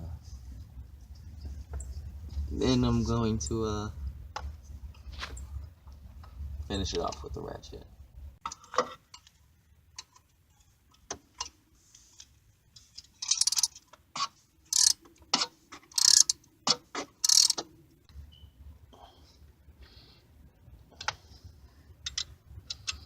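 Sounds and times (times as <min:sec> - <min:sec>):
hand ratchet clicking: 0:13.2 - 0:13.8, 0:14.7 - 0:15.0, 0:15.9 - 0:16.4, 0:17.2 - 0:17.6.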